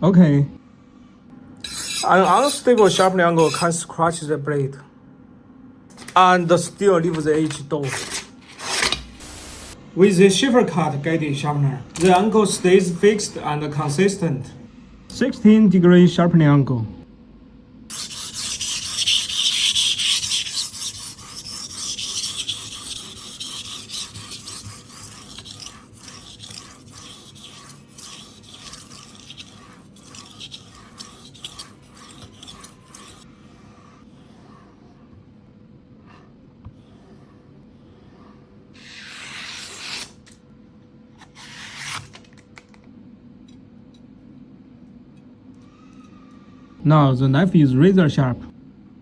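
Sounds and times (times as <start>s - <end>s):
sharpening stone scraping knife: 1.6s - 3.7s, 7.8s - 9.0s, 17.9s - 34.6s, 38.8s - 40.2s.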